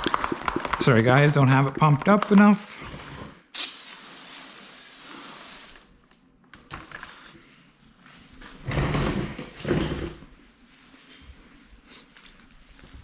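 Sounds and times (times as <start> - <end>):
pressure sprayer hissing: 3.6 - 5.9.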